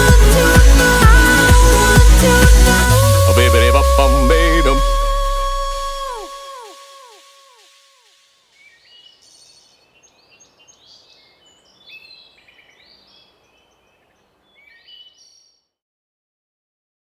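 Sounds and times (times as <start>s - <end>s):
outdoor background hiss: 6.2s - 15.5s
birds chirping: 7.6s - 15.5s.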